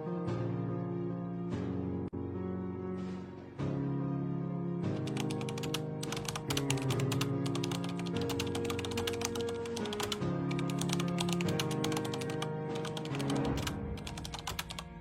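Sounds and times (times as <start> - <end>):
background music of held chords: 0.0 - 15.0
rapid clicking like keyboard typing: 5.0 - 15.0.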